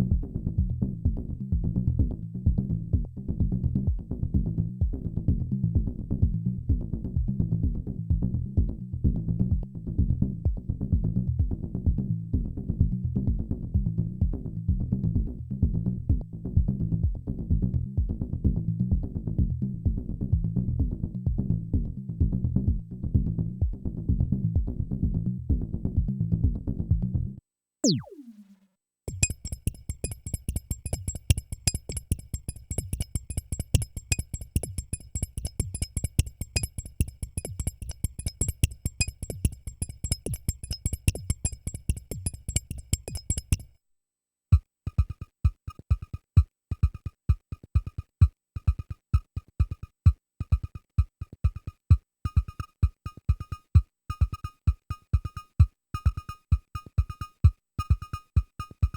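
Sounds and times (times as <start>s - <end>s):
synth low thumps and ringing tones: 27.8s - 28.4s, 29.1s - 43.7s, 44.5s - 58.9s
synthesizer bass pattern: 27.8s - 28.5s, 29.1s - 43.7s, 48.7s - 58.9s
falling synth zap: 27.8s - 28.6s
repeating high synth blip: 27.8s - 43.7s, 50.5s - 58.9s.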